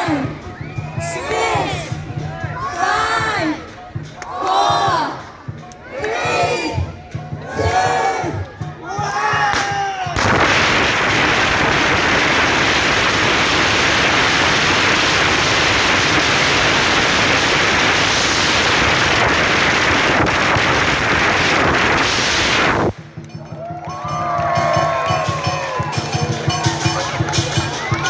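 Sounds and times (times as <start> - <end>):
firecrackers crackling: 8.4 - 28.0.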